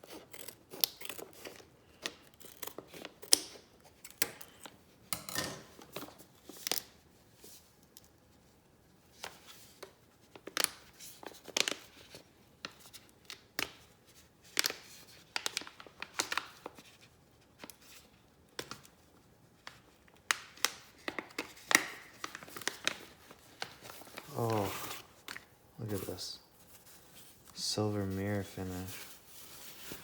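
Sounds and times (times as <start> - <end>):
packaging rustling and tearing: 0.0 - 4.0, 10.3 - 19.0, 19.6 - 30.0.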